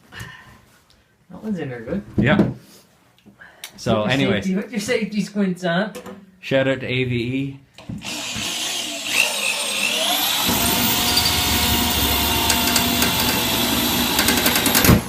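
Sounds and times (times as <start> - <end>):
electric drill running: 8.0 - 15.0.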